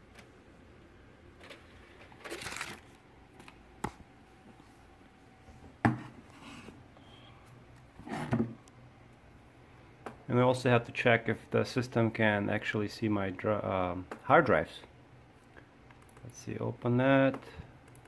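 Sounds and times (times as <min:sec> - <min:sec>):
rustling: 0:01.4 - 0:03.0.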